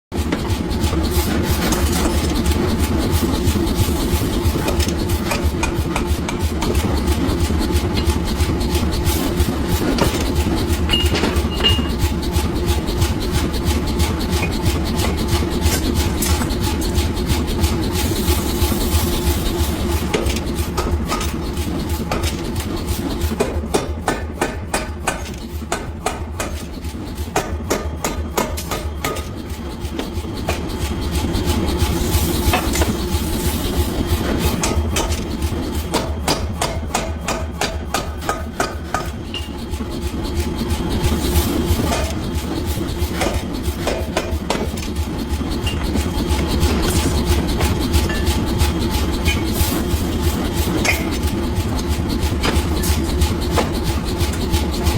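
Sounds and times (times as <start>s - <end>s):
low machine hum: 0.2s - 54.9s
rasping and scraping: 0.2s - 54.9s
machine humming: 0.3s - 23.2s.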